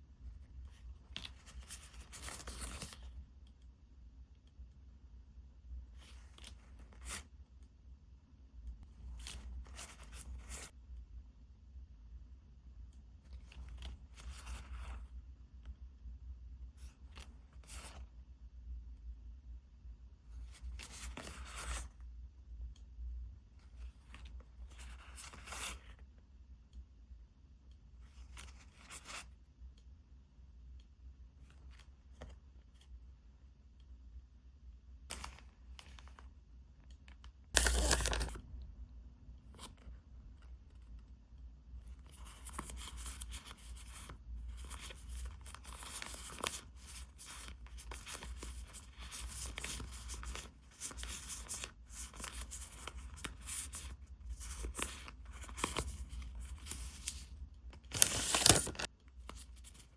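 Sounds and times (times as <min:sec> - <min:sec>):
packaging tearing and crinkling: 0:37.6 - 0:38.4, 0:57.8 - 0:58.9.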